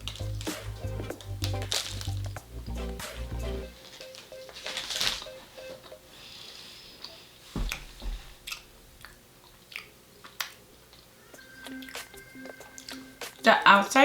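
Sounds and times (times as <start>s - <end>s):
crunchy chewing: 0.0s - 5.3s, 8.4s - 12.1s.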